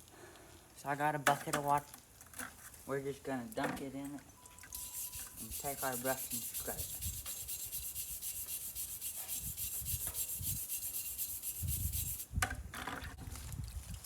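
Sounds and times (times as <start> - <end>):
brush scrubbing metal: 4.7 - 12.3
scattered scrapes: 4.8 - 12.3.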